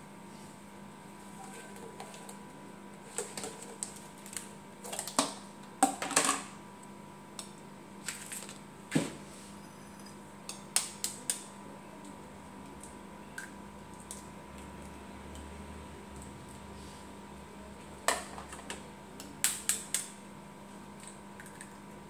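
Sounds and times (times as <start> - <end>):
faint hum: 0.0 - 22.0.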